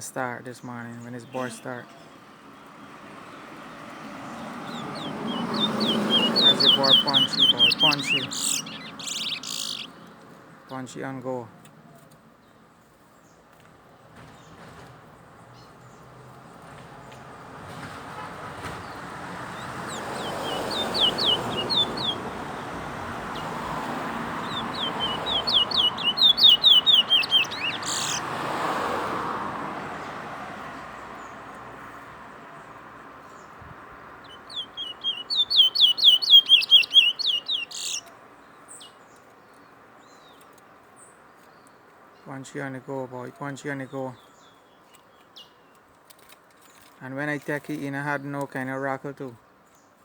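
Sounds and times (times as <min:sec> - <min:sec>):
finch singing: 0:00.0 - 0:02.2, 0:03.6 - 0:10.1, 0:18.8 - 0:28.4, 0:34.2 - 0:45.8.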